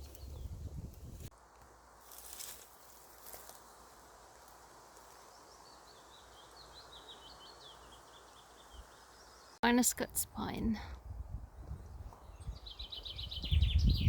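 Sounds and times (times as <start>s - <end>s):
soft rustles: 2.0s - 5.3s
songbird twittering: 5.3s - 9.6s, 11.6s - 14.0s.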